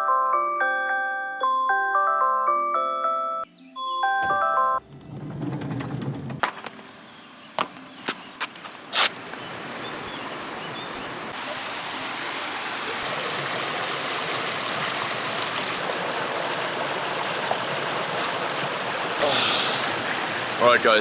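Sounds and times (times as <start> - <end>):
running water rushing: 8.9 - 21.0.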